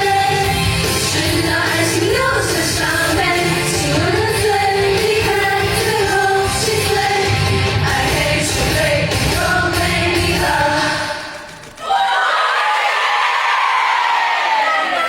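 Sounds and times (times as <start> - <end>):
woman singing: 0.0 - 11.2.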